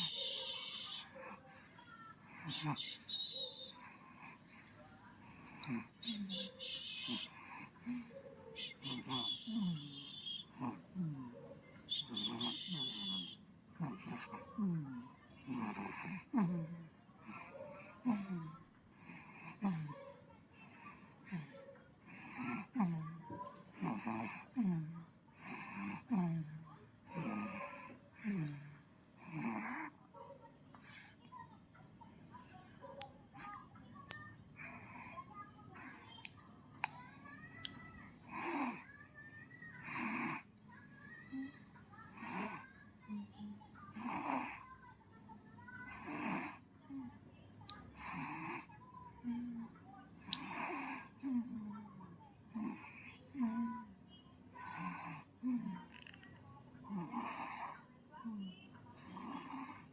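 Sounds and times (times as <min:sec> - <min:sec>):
baby snoring: 0:00.0 - 0:03.1, 0:03.7 - 0:11.4, 0:12.0 - 0:20.0, 0:20.6 - 0:30.0, 0:39.8 - 0:40.5, 0:43.9 - 0:44.7, 0:45.9 - 0:47.0, 0:48.0 - 0:51.7, 0:52.4 - 0:53.9, 0:54.6 - 0:56.1, 0:56.9 - 0:57.8, 0:59.0 - 0:59.9.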